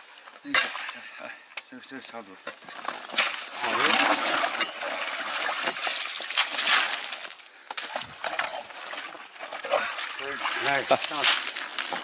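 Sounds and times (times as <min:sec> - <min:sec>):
water splashing and sloshing: 0:02.5 - 0:12.0.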